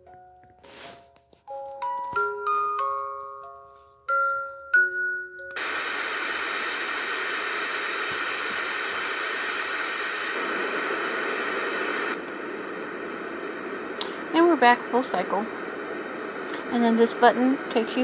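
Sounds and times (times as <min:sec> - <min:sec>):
chime melody from small speaker: 0:01.4 - 0:05.6
white noise hiss: 0:05.6 - 0:18.0.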